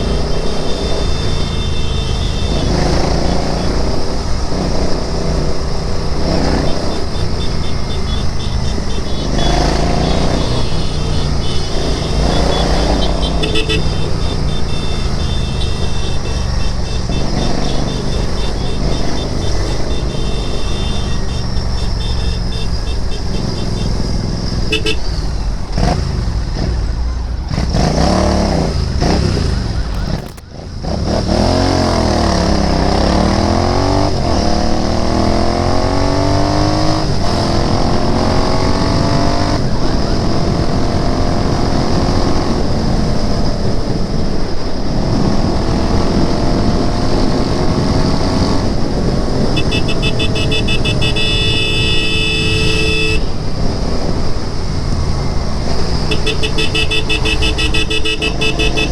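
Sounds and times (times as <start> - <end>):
vehicle horn: 0.0 - 4.0, 6.3 - 24.0, 24.7 - 25.2, 49.4 - 53.4, 56.0 - 58.9
motorcycle engine accelerating: 0.0 - 44.3, 45.0 - 58.9.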